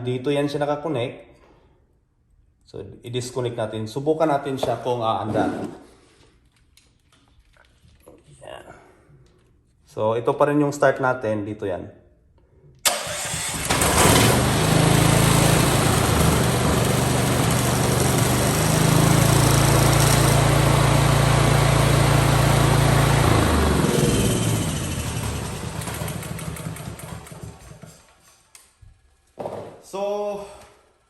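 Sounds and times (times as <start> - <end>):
generator engine running: 12.9 - 27.9.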